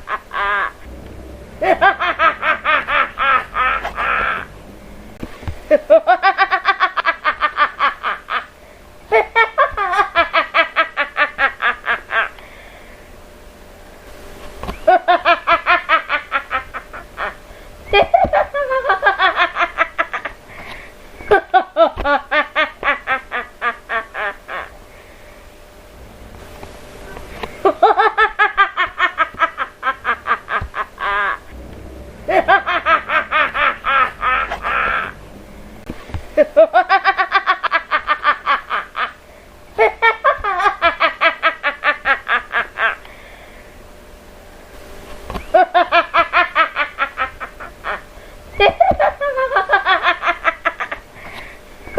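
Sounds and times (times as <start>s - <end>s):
woman cackling laugh: 0.0s - 1.0s, 1.6s - 4.5s, 5.7s - 8.5s, 9.1s - 12.4s, 14.8s - 20.4s, 21.2s - 24.8s, 27.6s - 31.6s, 32.3s - 35.2s, 36.4s - 39.2s, 39.8s - 43.0s, 45.4s - 51.0s
woman breathing in: 43.0s - 43.8s.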